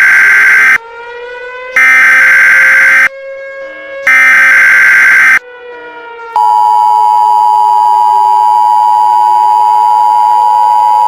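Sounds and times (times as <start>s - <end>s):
screechy data burst: 0.0s - 0.8s, 1.8s - 3.1s, 4.1s - 5.4s.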